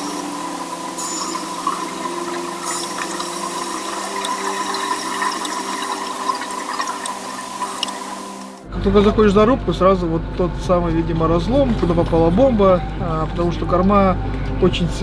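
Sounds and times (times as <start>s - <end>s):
rushing bubbling water: 0.0s - 8.6s
steady hum of held tones: 0.0s - 15.0s.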